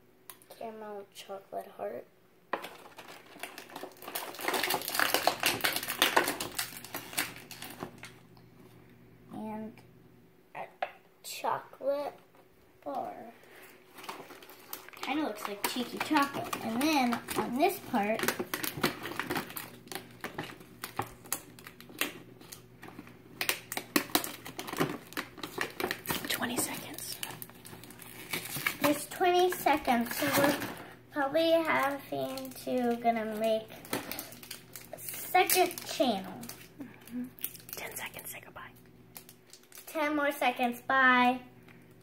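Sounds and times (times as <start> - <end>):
plastic packaging crinkling: 2.6 - 8.2, 13.4 - 40.0.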